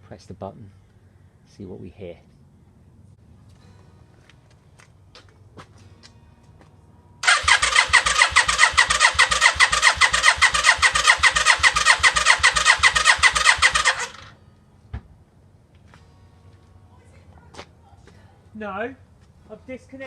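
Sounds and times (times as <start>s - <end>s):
motorcycle starter cranking engine: 7.2s - 14.4s.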